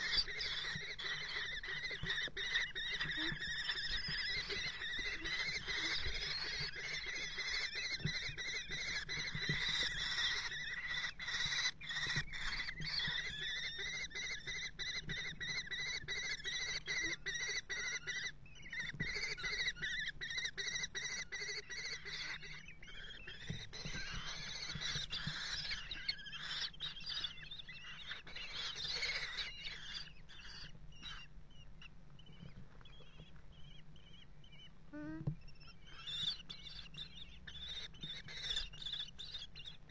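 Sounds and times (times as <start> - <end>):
chicks begging calls: 0.0 - 39.9.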